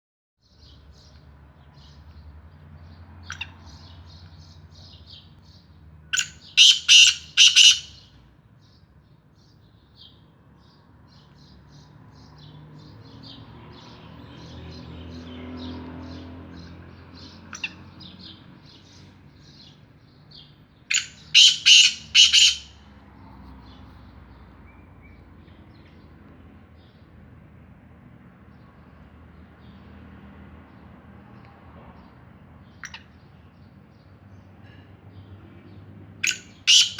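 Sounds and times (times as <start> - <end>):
francolin calling: 6.2 - 8.0, 20.9 - 22.8, 36.2 - 36.9.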